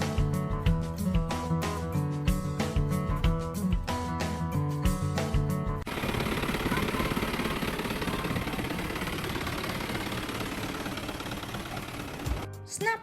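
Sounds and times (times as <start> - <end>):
tractor engine running: 5.8 - 12.5.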